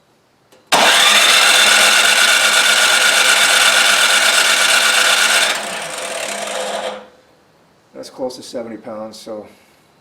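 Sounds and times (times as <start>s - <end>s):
electric starter cranking engine: 0.7s - 7.1s.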